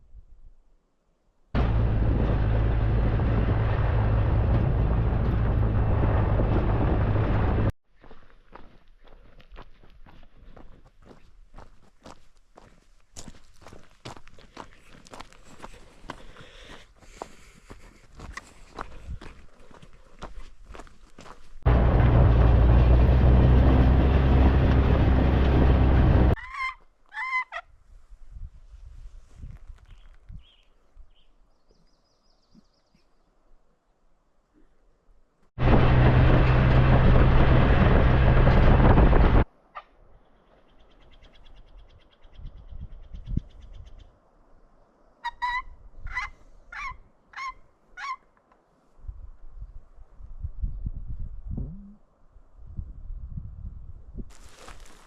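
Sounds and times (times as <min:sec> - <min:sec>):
atv engine running: 0:01.6 - 0:07.7, 0:21.7 - 0:26.4, 0:35.6 - 0:39.4
turkey-like bird calls: 0:26.4 - 0:27.7, 0:45.2 - 0:48.4.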